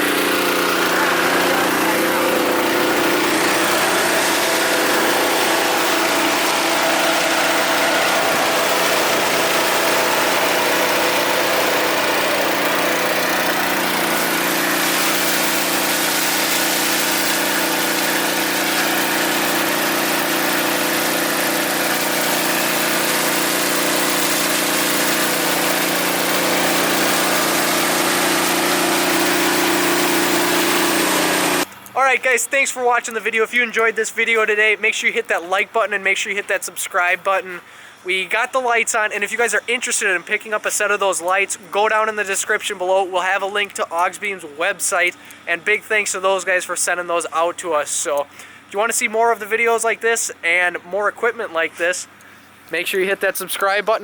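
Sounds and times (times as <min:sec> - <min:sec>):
engine idling: 0:00.0 - 0:32.3.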